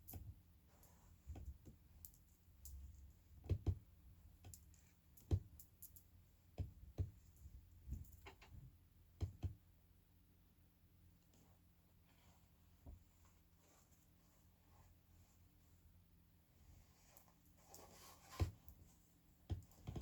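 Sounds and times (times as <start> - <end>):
faint irregular clicks: 0.0 - 8.6.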